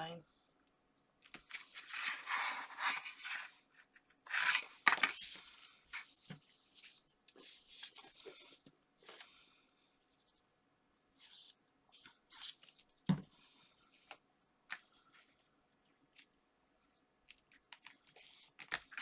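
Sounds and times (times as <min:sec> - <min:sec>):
paper and card rustling: 0:01.3 - 0:03.6, 0:04.3 - 0:09.3, 0:17.3 - 0:19.0.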